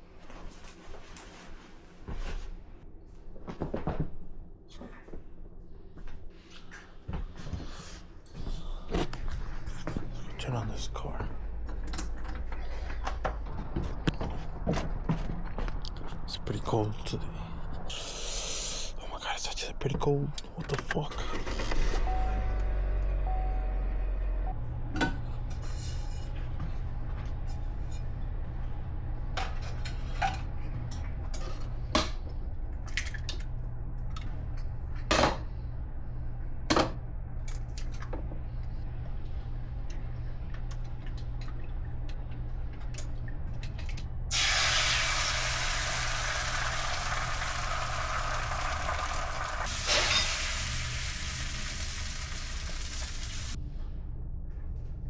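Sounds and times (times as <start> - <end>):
loud steady hiss: 44.3 - 53.6.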